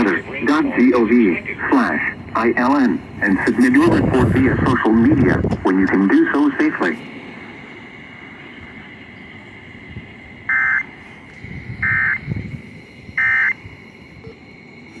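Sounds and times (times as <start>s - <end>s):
harsh digital data tones: 13.2s - 13.6s.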